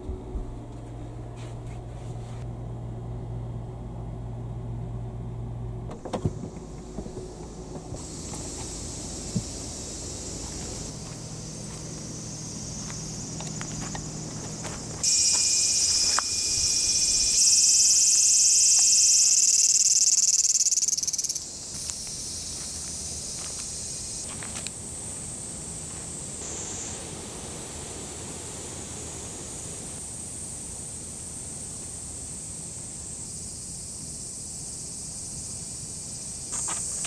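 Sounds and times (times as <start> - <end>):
background insects: 3.6 - 37.0
insect high buzzing call: 7.4 - 37.0.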